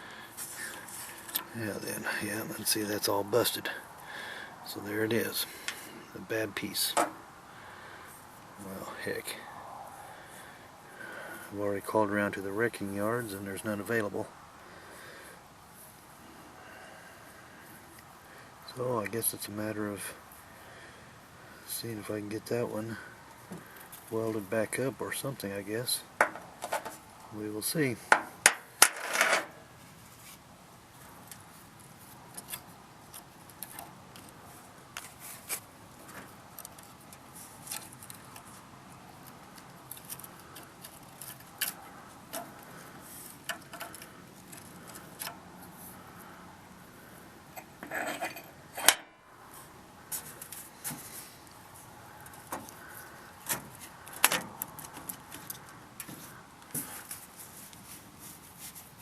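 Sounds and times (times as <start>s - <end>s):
small metal parts clinking: 47.6s - 49.1s.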